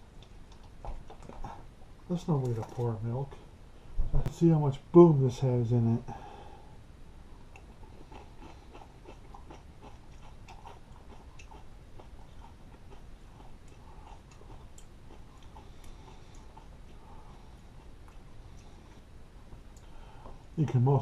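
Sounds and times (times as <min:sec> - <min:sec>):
person chewing crunchy cereal: 0:07.5 - 0:20.5.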